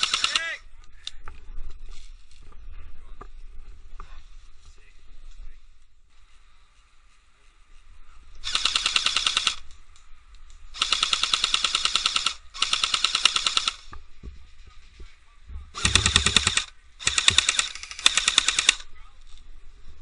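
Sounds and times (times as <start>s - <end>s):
airsoft gun automatic bursts: 0.0s - 0.6s, 8.4s - 9.6s, 10.8s - 13.9s, 15.8s - 18.8s.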